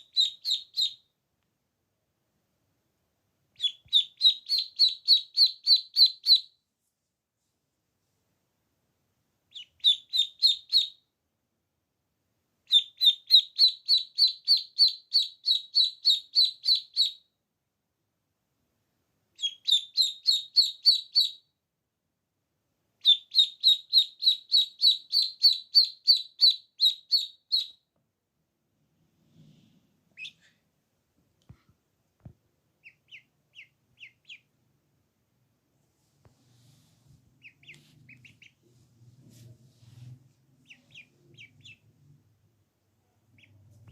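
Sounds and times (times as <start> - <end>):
duckling peeping: 0.0 - 1.1, 3.6 - 6.6, 9.5 - 11.0, 12.7 - 17.2, 19.4 - 21.5, 23.0 - 27.8, 30.1 - 30.5, 32.8 - 34.6, 37.3 - 38.7, 40.6 - 42.1, 43.2 - 43.9.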